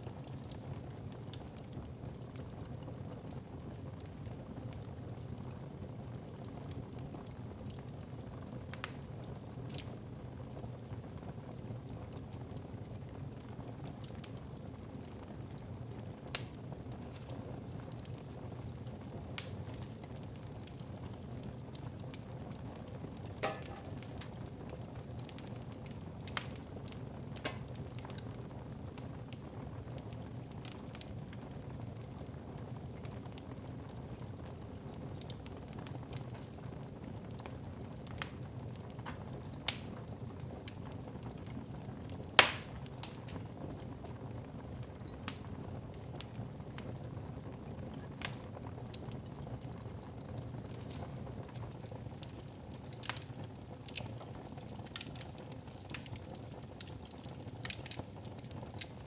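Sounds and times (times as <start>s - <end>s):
wood fire crackling: 0.0s - 59.0s
fire pops: 6.3s - 10.0s, 14.0s - 31.4s, 35.1s - 59.0s.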